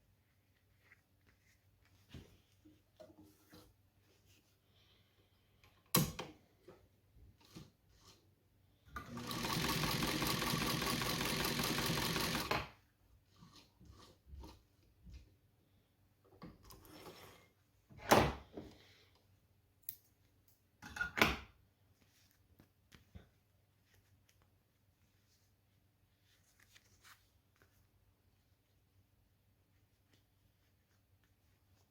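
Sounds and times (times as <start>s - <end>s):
sewing machine stitching: 9.0s - 12.7s.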